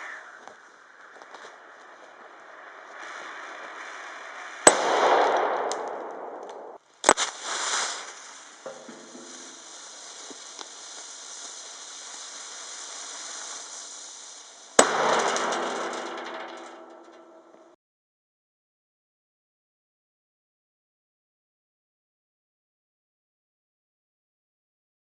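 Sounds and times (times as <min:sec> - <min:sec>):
grenade bangs: 0:04.6 - 0:07.4, 0:14.8 - 0:17.6.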